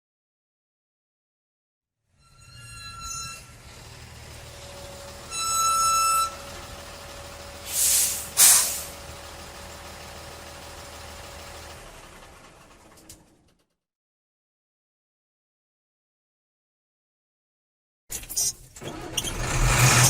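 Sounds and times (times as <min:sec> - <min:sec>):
truck horn blast: 0:02.2 - 0:03.8, 0:05.1 - 0:06.7
truck engine running: 0:03.0 - 0:13.7, 0:18.8 - 0:20.0
air brake hisses: 0:07.6 - 0:09.0.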